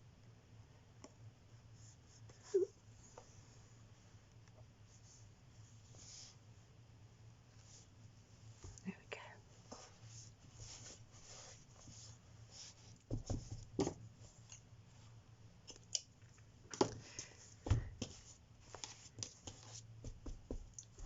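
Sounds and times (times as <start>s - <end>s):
faint room hiss: 0.0s - 21.0s.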